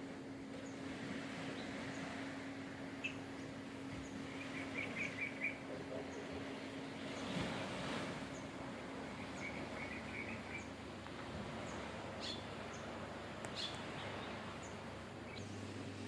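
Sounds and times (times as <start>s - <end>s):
outdoor background hiss: 0.0s - 16.0s
birds chirping: 2.9s - 7.3s, 8.2s - 10.9s, 11.6s - 15.6s
high bird calls: 3.0s - 6.3s, 9.1s - 10.8s, 11.7s - 12.9s, 13.5s - 15.5s.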